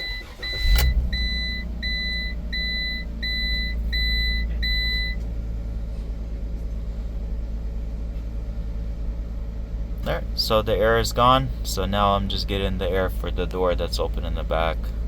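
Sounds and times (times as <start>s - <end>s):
dashboard warning chime beeps: 0.0s - 5.3s
engine starting and idling: 0.0s - 15.0s.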